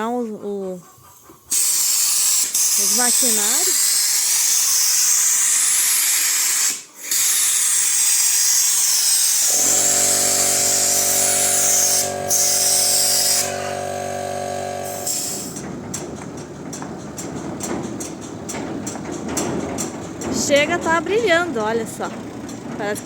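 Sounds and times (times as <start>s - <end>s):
pressurised sprayer hissing: 1.5s - 15.6s
mechanical hum: 8.9s - 23.0s.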